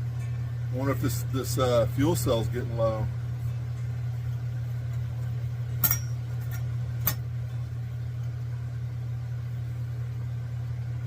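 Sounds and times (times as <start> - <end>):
electric fan humming: 0.0 - 11.0
gas lantern clinks: 5.8 - 7.2.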